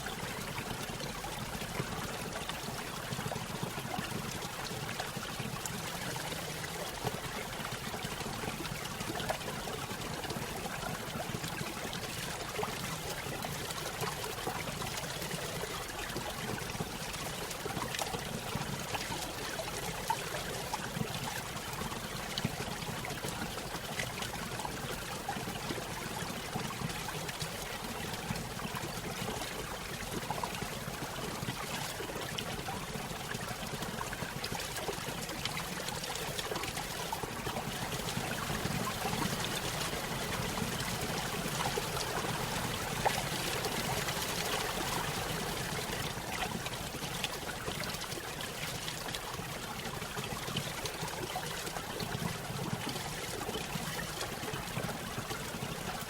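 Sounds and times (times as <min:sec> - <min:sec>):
stream trickling over waterfall: 0:00.0 - 0:56.0.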